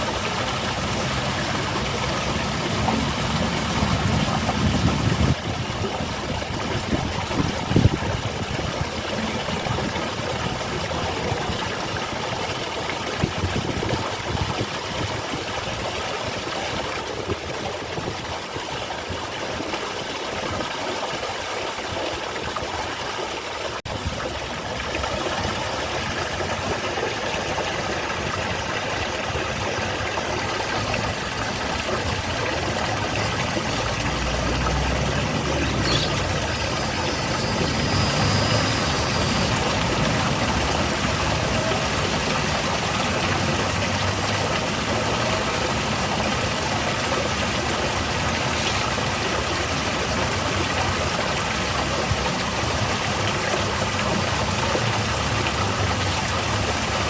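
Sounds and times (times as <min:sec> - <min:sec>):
waterfall rushing and splashing: 0:00.0 - 0:57.0.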